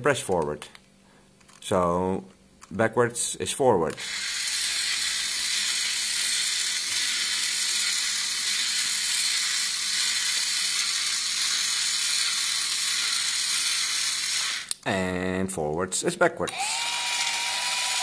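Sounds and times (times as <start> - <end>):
small electric motor whirring: 3.9 - 14.8, 16.5 - 18.0.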